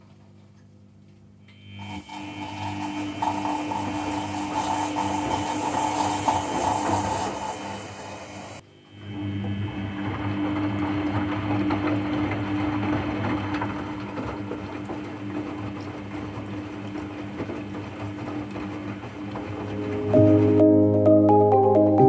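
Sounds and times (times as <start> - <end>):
washing machine motor grating hum: 0.0 - 22.0
music with mallet percussion: 20.0 - 22.0.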